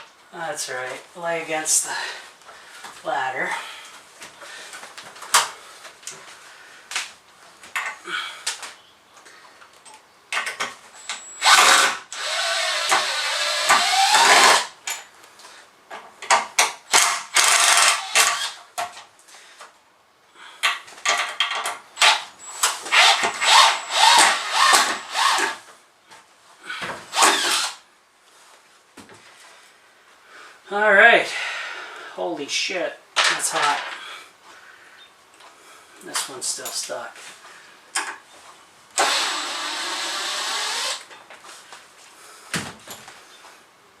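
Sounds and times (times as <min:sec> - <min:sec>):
power drill backing out screws: 0:10.4 - 0:14.7, 0:16.9 - 0:18.9, 0:21.0 - 0:25.6, 0:27.1 - 0:27.8, 0:39.0 - 0:41.2
knocks and clatter from work: 0:20.7 - 0:22.2.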